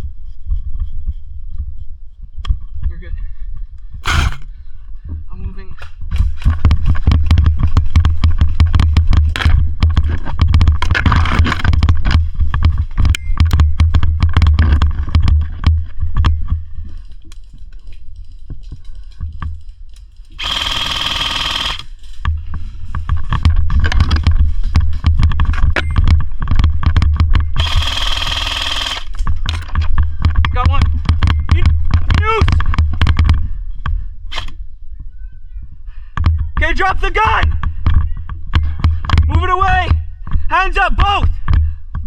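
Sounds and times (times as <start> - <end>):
camera handling rumble and rustle: 3.5 - 20.6, 21.3 - 36.6
airsoft gun full-auto burst: 20.4 - 22.0, 27.6 - 29.2.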